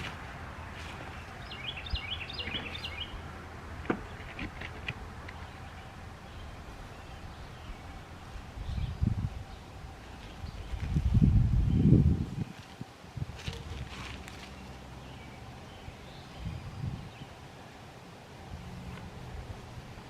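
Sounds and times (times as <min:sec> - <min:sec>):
bird chirping: 0:00.0 - 0:12.6, 0:14.4 - 0:17.4
outdoor background noise: 0:00.0 - 0:20.0.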